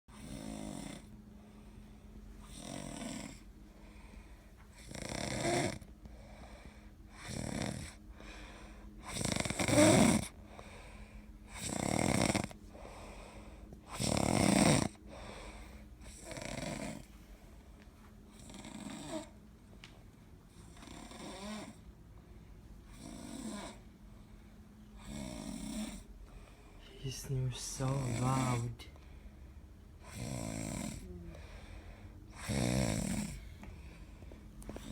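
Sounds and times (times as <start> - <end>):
person snoring: 0.2 - 1.1, 2.4 - 3.5, 4.8 - 5.8, 7.1 - 8.4, 9.0 - 10.4, 11.5 - 17.1, 18.4 - 19.3, 20.6 - 21.8, 22.9 - 23.8, 25.0 - 26.1, 26.9 - 29.0, 30.0 - 34.1.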